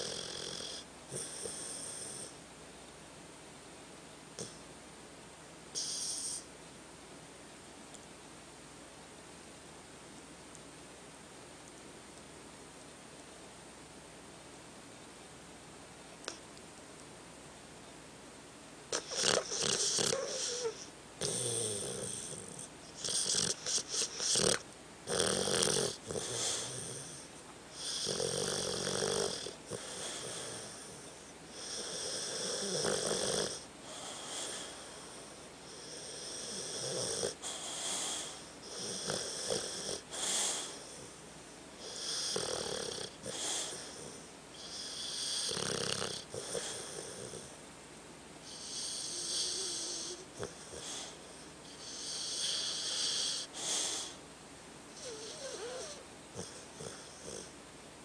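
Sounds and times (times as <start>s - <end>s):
dog snoring: 0.0s - 2.4s, 4.4s - 4.6s, 5.7s - 6.5s, 18.9s - 41.2s, 41.8s - 47.6s, 48.4s - 54.2s, 54.9s - 57.5s.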